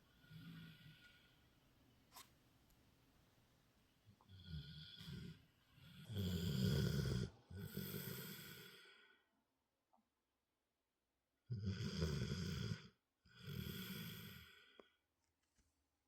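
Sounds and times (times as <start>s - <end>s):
cat snoring: 4.3s - 9.0s, 11.5s - 14.7s.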